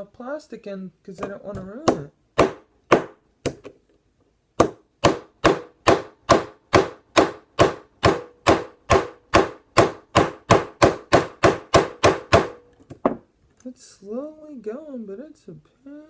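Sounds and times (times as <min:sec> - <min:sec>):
hammer striking metal pin: 0:04.6 - 0:13.2.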